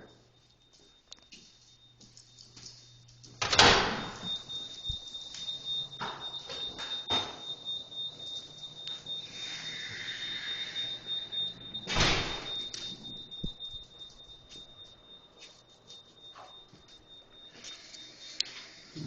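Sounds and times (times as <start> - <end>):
high-pitched electronic tone: 4.2 - 14.9.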